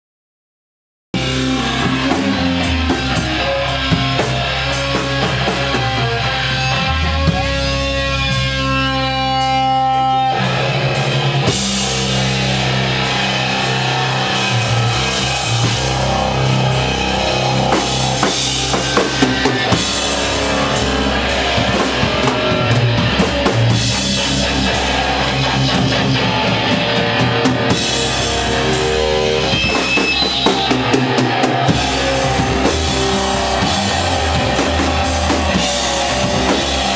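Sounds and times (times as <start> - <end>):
doom metal band playing: 1.2 - 36.9
drums: 1.2 - 36.9
fuzzed electric guitar: 1.2 - 36.9.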